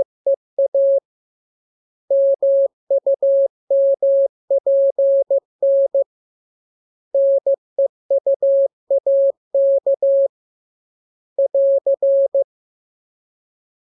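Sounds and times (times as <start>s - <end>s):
morse code beeps: 11.4s - 12.4s.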